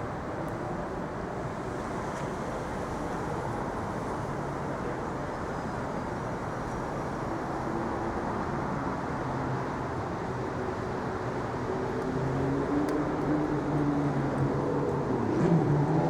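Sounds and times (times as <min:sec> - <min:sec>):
traffic rumble: 0:10.8 - 0:16.0.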